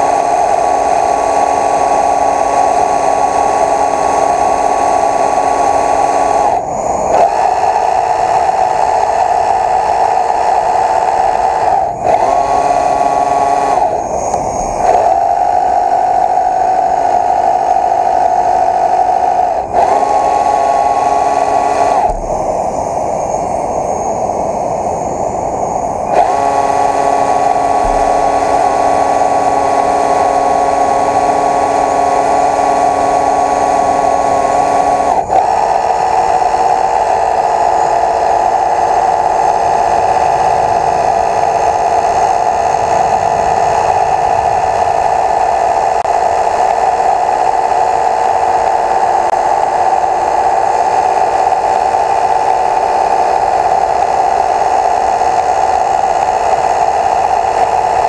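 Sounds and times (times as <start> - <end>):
small electric motors whining: 0.0 - 58.0.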